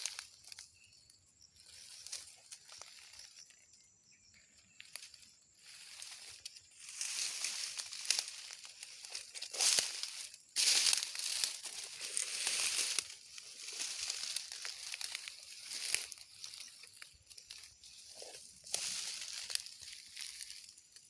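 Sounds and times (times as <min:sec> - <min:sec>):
rustling and crackling: 0:04.9 - 0:21.0.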